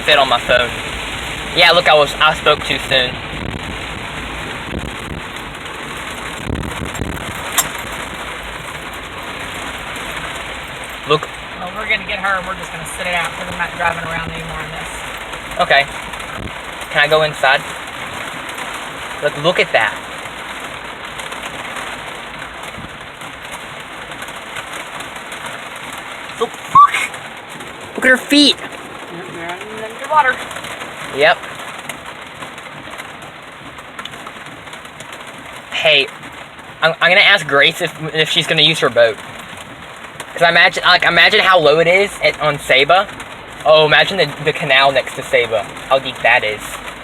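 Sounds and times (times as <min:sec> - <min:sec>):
heavy rain on a car roof: 0:00.0 - 0:47.0
high-pitched rising call: 0:26.7 - 0:27.1.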